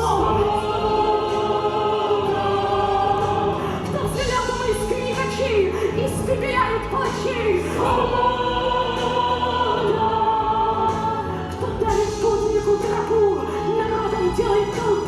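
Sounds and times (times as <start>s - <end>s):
choir singing held notes: 0.0s - 4.9s, 7.6s - 12.2s.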